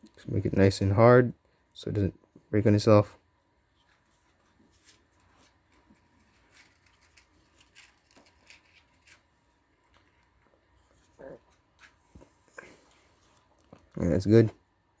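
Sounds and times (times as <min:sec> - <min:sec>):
small objects ticking and rustling: 0:04.8 - 0:11.0.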